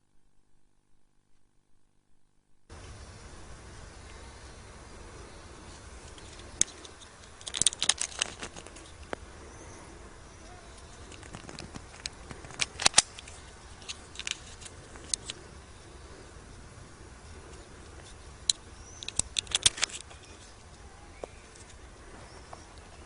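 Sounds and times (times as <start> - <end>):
pistol metallic clicks and rattles: 6.0 - 9.2, 10.8 - 15.4, 17.5 - 20.5.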